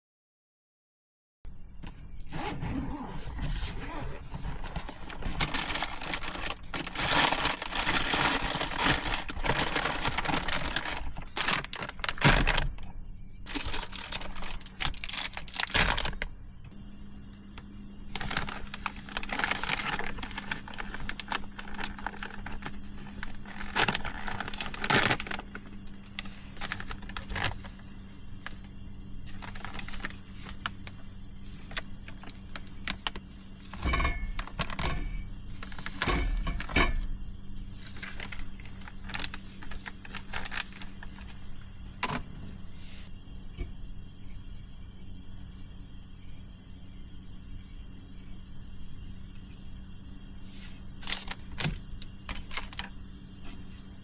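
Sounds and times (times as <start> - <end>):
faint hum with high whine: 1.5 - 54.0
material crinkling and rustling: 2.7 - 16.3, 18.0 - 37.1, 37.8 - 43.1, 50.4 - 53.8.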